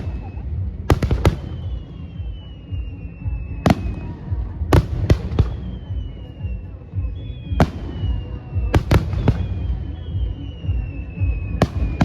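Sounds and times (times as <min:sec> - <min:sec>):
fireworks bangs: 0:00.0 - 0:06.6, 0:07.4 - 0:12.0.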